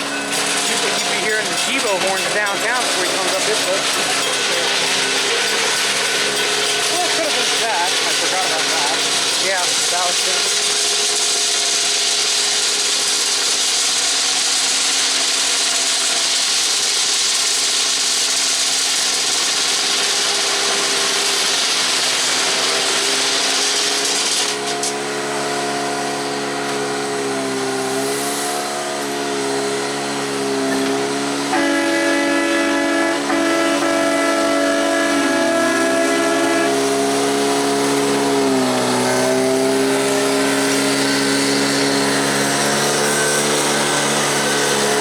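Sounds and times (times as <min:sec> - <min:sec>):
machinery engine wavering pitch: 0:00.0 - 0:13.2, 0:21.4 - 0:45.0
loud steady hiss: 0:00.0 - 0:25.2.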